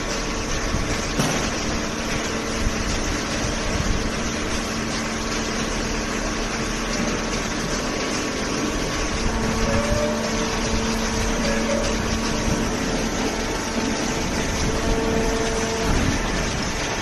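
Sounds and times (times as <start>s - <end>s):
hydraulic machine drone: 0.0s - 17.0s.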